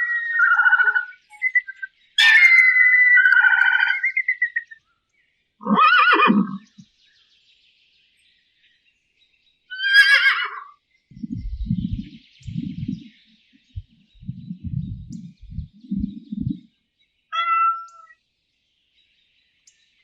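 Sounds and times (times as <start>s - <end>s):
animal cries with wavering tone: 0.0s - 1.2s, 2.2s - 4.5s, 9.7s - 10.7s, 17.3s - 18.2s.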